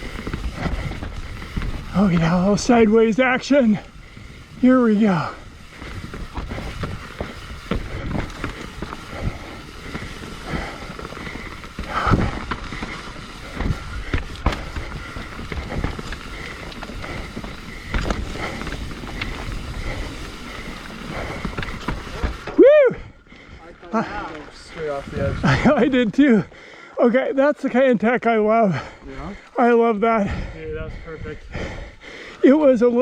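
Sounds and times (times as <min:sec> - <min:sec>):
wheels knocking on roots: 0:00.0 - 0:26.5
bike tyre and drivetrain rattle: 0:00.0 - 0:26.9, 0:27.6 - 0:33.0.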